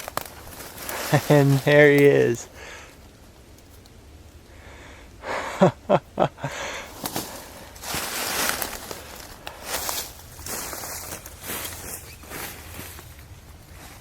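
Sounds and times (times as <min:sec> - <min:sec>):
footsteps crunching dry leaves: 0:00.0 - 0:02.5, 0:06.9 - 0:14.0
heavy breaths: 0:02.5 - 0:03.0, 0:04.5 - 0:05.6, 0:06.4 - 0:10.0.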